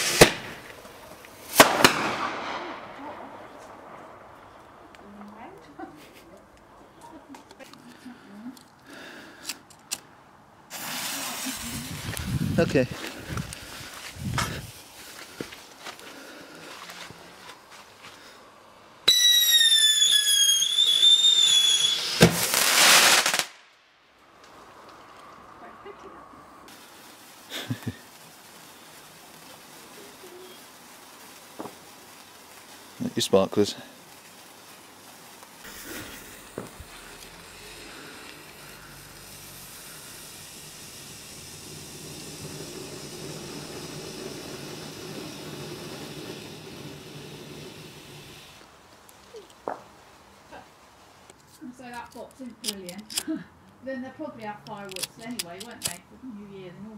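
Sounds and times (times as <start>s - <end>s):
firework bang: 0.0s - 4.6s, 19.1s - 23.7s, 31.5s - 31.8s, 35.6s - 48.6s
whistling firework: 0.0s - 4.9s, 10.7s - 12.4s, 19.0s - 23.8s, 26.7s - 33.1s, 33.9s - 48.7s
sharp crack: 0.0s - 5.4s, 22.0s - 25.4s, 54.7s - 56.0s
hissing crackle: 0.0s - 53.8s, 54.6s - 56.0s.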